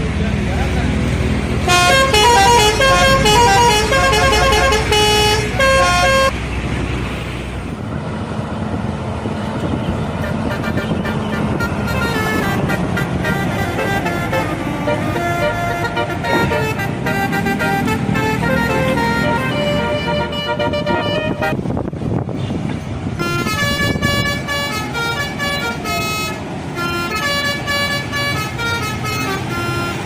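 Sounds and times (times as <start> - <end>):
engine and road noise: 0.0 - 30.0
bus air horn playing a tune: 1.6 - 6.3, 10.2 - 21.8, 23.2 - 30.0.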